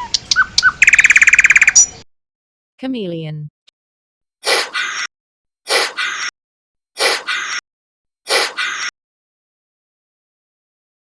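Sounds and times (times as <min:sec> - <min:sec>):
chameleon hissing: 0:04.4 - 0:05.1, 0:05.7 - 0:06.3, 0:07.0 - 0:07.6, 0:08.3 - 0:08.9.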